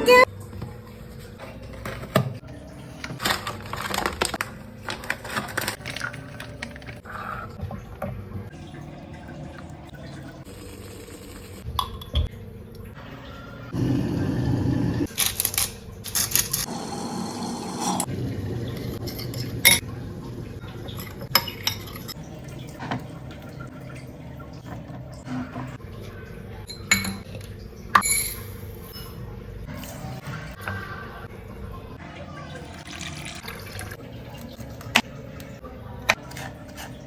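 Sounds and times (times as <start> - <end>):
utensils and dishes clinking: 1.0 - 7.1, 15.0 - 16.7, 18.0 - 20.0, 20.6 - 23.2, 24.7 - 30.6, 33.0 - 37.0.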